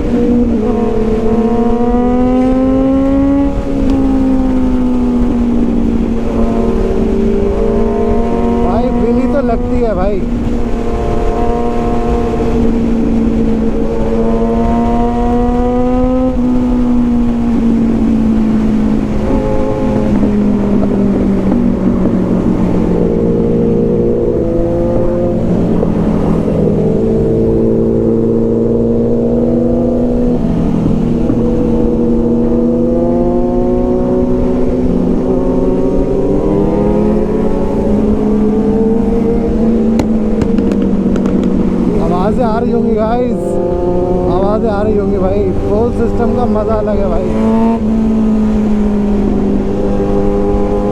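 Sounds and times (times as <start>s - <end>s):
motorcycle engines under load: 37.4s - 50.9s.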